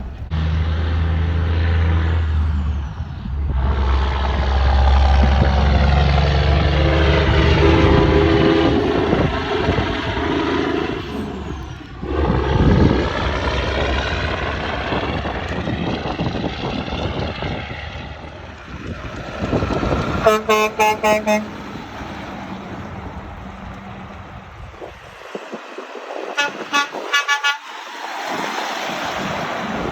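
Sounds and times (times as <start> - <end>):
heavy traffic passing: 0.0 - 29.9
trucks rushing past: 0.0 - 29.9
vehicle horn quick toots: 20.2 - 21.6, 26.4 - 27.7.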